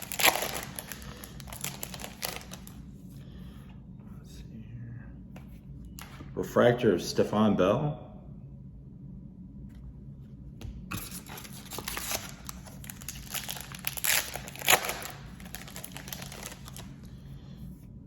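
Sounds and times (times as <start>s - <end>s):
foil wrapper crinkling and tearing: 0.0s - 2.8s, 10.9s - 17.1s.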